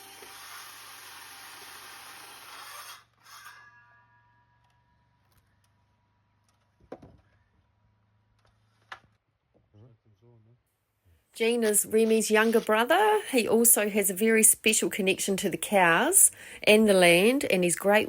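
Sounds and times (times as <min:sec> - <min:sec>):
power drill running: 0:00.0 - 0:03.7.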